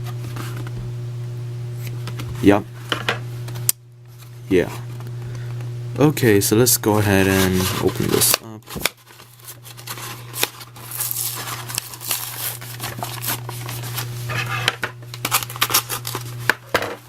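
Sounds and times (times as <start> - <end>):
low hum: 0.0 - 8.4
packaging crinkling and tearing: 7.4 - 16.7.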